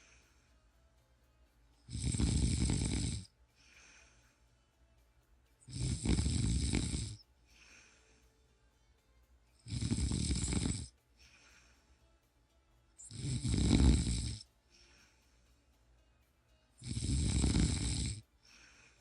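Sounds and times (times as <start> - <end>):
person snoring: 1.9 - 4.1, 5.6 - 8.2, 9.6 - 11.8, 13.0 - 15.2, 16.8 - 19.0.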